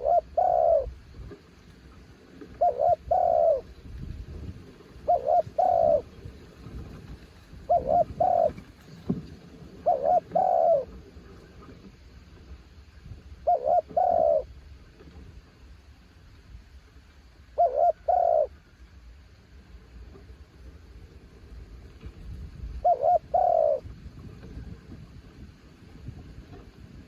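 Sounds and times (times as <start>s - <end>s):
dove cooing: 0.0s - 1.0s, 2.5s - 3.7s, 5.0s - 6.2s, 7.6s - 8.7s, 9.8s - 11.0s, 13.4s - 14.5s, 17.6s - 18.6s, 22.8s - 23.9s
wind rumble on microphone: 0.0s - 27.0s.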